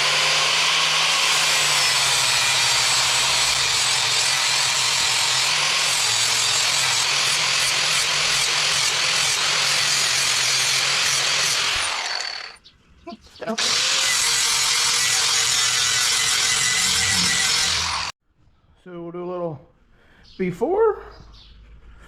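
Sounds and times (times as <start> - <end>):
power grinder on steel: 0.0 - 12.6, 13.6 - 18.2.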